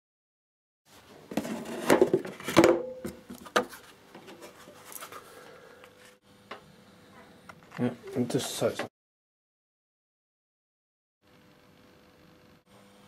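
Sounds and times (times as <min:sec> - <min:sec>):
scraping and handling noise: 0:00.9 - 0:06.2.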